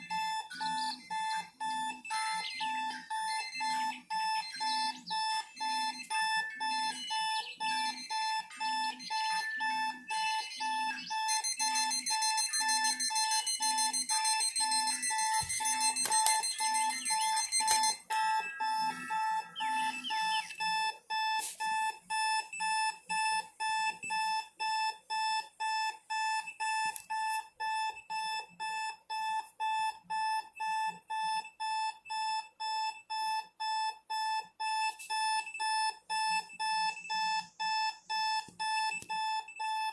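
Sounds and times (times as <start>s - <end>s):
high electronic ringing tone: 0.0s - 31.4s
alarm clock beeping: 0.0s - 39.9s.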